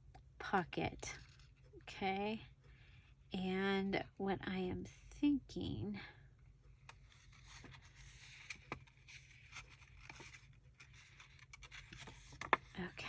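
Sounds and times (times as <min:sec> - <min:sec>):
soft paper ticks: 0:00.0 - 0:03.0, 0:06.4 - 0:13.0
paper rustling: 0:06.9 - 0:12.8.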